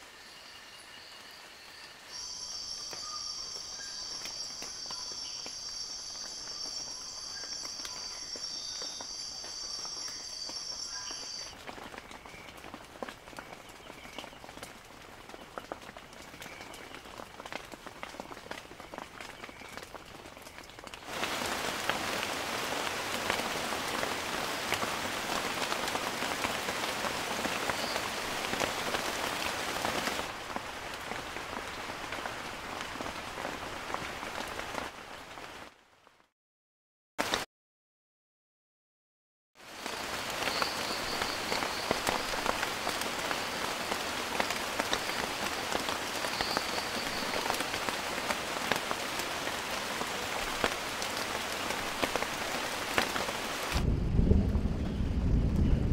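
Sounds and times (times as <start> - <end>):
insects droning: 0.0 - 11.5, 39.8 - 48.4
heavy rain: 0.0 - 36.3, 37.2 - 37.4, 39.6 - 55.9
rain dripping: 0.0 - 36.3, 39.6 - 55.9.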